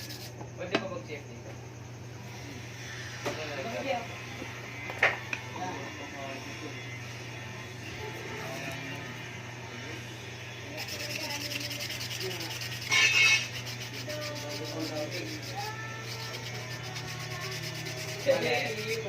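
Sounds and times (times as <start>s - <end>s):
scratchy sanding: 0.0s - 0.3s, 10.6s - 19.0s.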